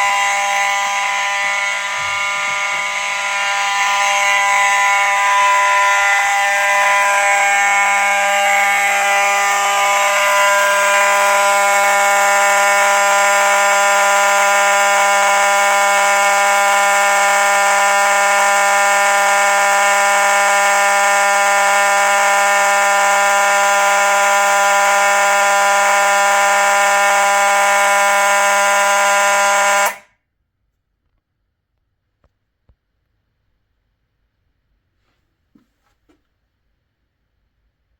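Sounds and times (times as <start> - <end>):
fire alarm horn buzzing: 0.0 - 30.1.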